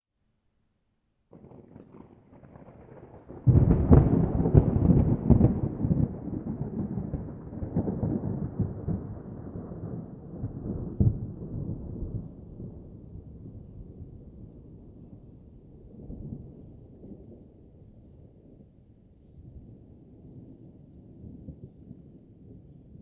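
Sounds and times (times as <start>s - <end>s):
distant thunder rumbling: 1.3s - 17.9s
crackling thunder roll: 1.3s - 23.0s.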